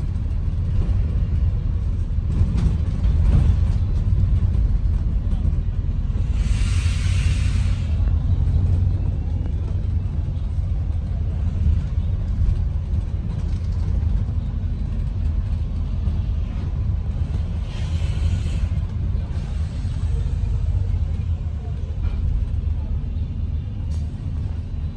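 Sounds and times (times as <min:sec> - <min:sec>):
bus engine and road rumble: 0:00.0 - 0:24.9
compressed air hiss: 0:06.2 - 0:08.0, 0:17.6 - 0:18.8.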